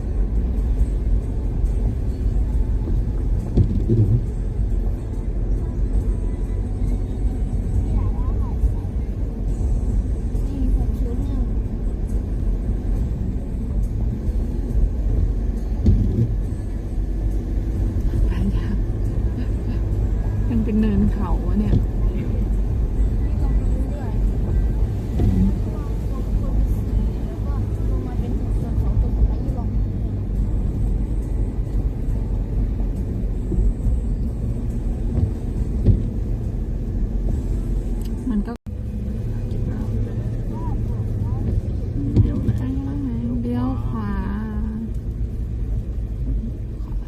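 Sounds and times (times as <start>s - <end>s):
car interior rumble: 0.0s - 47.0s
car bump: 3.4s - 4.3s, 15.8s - 16.4s.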